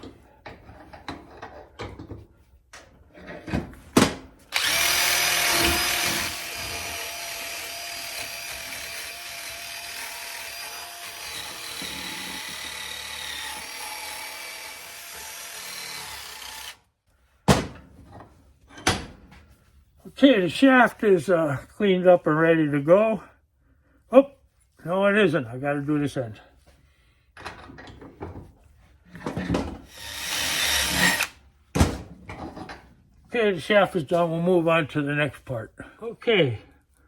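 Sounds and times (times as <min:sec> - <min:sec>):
power drill with wire brush: 0:04.5 - 0:16.8, 0:29.9 - 0:31.4.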